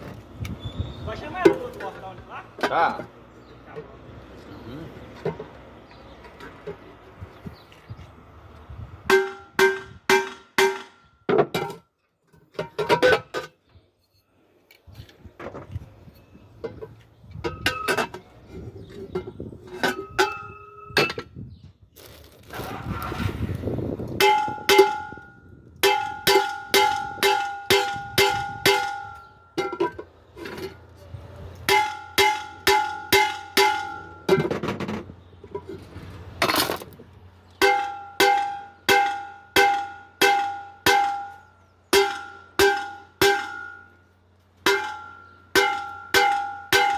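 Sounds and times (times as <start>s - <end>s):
hammer striking metal: 9.1s - 11.1s, 37.6s - 44.0s, 44.7s - 46.9s.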